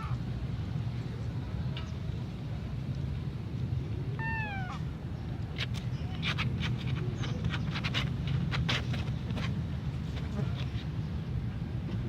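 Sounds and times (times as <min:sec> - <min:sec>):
cat meowing: 0:04.2 - 0:04.8
sharp clicks and scratches: 0:05.6 - 0:09.6.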